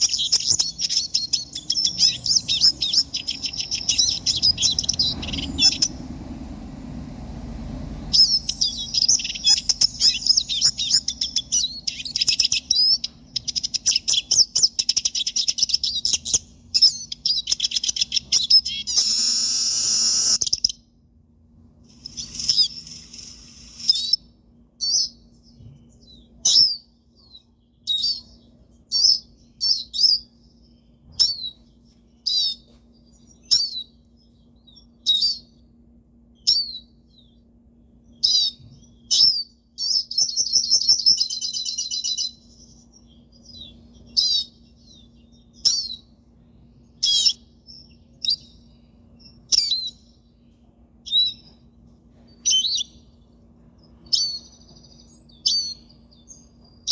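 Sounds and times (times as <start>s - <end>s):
sharp downward-sliding bird calls: 0.0s - 20.7s, 21.9s - 24.2s
bird twittering song: 0.0s - 20.9s, 21.8s - 35.7s, 36.3s - 56.9s
faint low hum: 0.0s - 56.9s.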